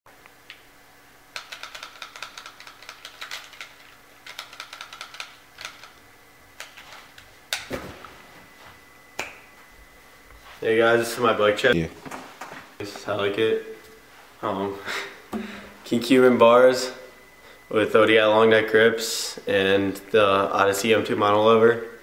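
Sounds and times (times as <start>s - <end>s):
rapid mechanical clicking: 1.3s - 6.0s.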